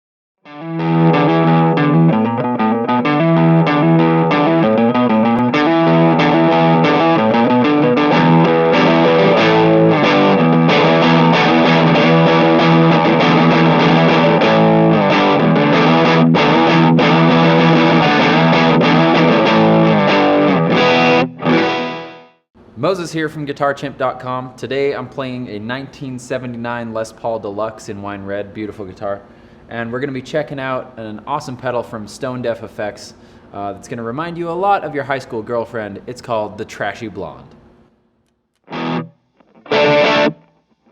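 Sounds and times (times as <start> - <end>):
distorted electric guitar riffs: 0.4 - 22.4, 38.6 - 40.9.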